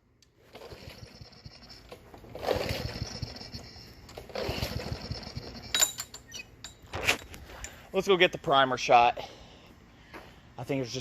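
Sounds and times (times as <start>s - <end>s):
lawn mower engine cranking: 0.3s - 7.4s
recoil starter rope whirring: 0.4s - 6.0s.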